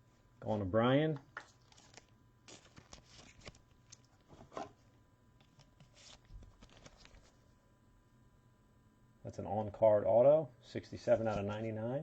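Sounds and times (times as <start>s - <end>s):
trading cards rustling and clicking: 1.3s - 4.5s, 5.4s - 7.4s.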